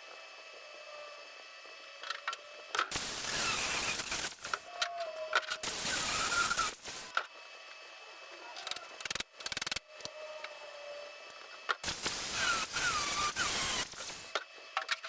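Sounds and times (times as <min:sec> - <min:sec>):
sheet metal being cut: 0:02.9 - 0:04.6, 0:11.8 - 0:14.3.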